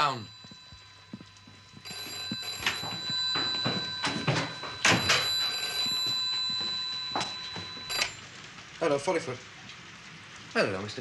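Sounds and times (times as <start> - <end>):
telephone bell ringing: 0.0 - 8.2.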